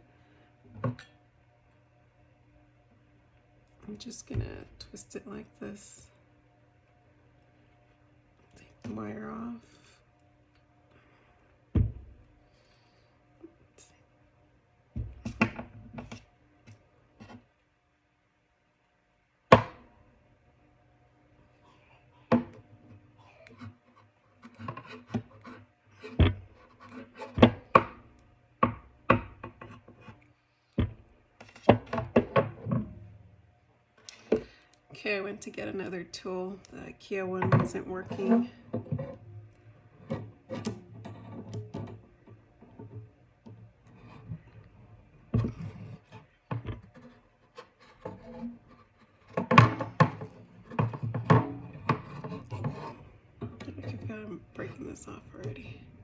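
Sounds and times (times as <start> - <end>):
hard objects clicking and knocking: 49.2 - 54.1
light scraping: 51.6 - 55.9.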